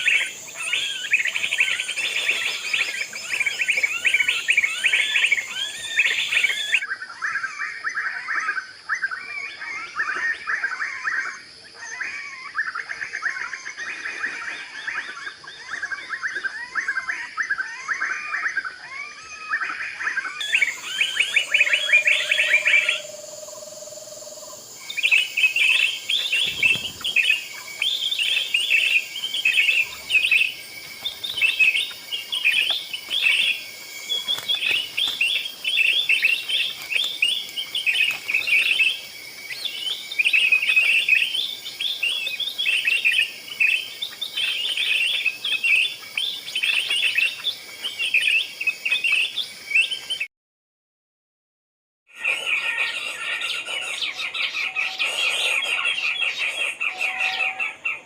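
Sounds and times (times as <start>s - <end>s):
small birds chirping: 0.0s - 50.3s, 52.2s - 58.0s
bird warbling: 20.4s - 38.9s.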